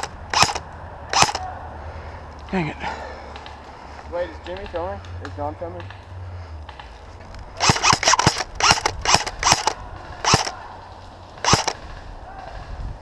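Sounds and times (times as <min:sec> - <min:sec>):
airsoft gun shots: 0:00.0 - 0:01.4, 0:07.6 - 0:10.6, 0:11.4 - 0:11.9.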